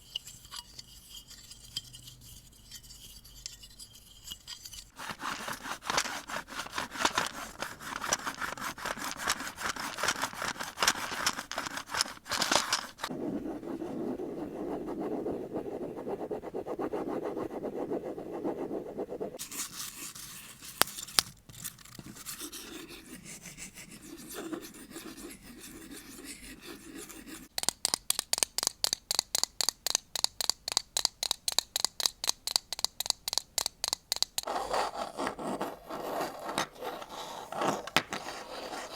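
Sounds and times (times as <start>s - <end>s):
scratching and rubbing on objects: 0.1s - 27.5s, 34.4s - 38.9s
quick strokes: 4.9s - 19.8s.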